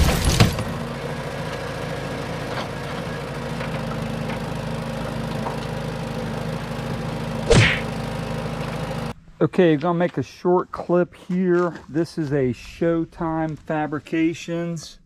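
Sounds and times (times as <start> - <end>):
diesel excavator idling: 0.0 - 9.2.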